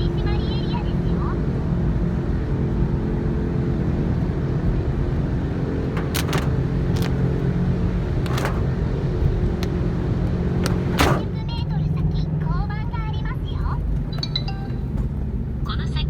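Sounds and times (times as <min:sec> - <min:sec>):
car engine droning: 0:00.0 - 0:16.0
road noise: 0:00.0 - 0:16.0
sharp clicks or knocks: 0:06.0 - 0:07.4, 0:08.2 - 0:08.9, 0:10.6 - 0:11.3.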